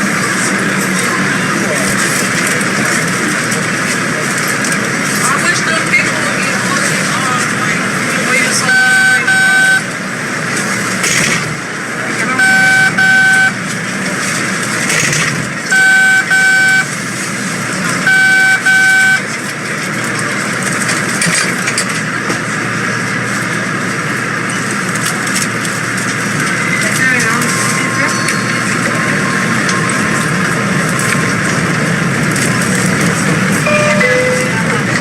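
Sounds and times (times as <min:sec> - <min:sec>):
subway car running noise: 0:00.0 - 0:35.0
door-closing double beep: 0:08.7 - 0:09.8, 0:12.4 - 0:13.6, 0:15.7 - 0:16.9, 0:18.1 - 0:19.2.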